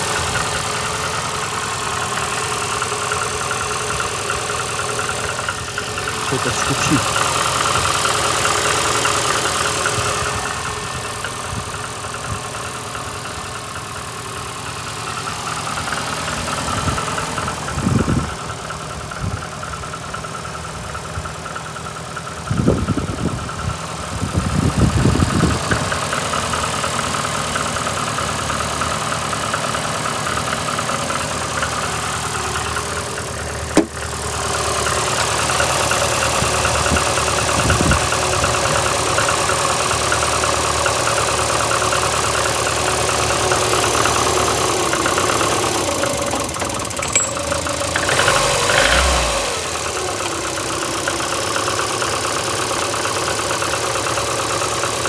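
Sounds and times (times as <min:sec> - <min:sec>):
car engine idling unevenly: 0:00.0 - 0:55.0
dull thumps: 0:33.8 - 0:34.1.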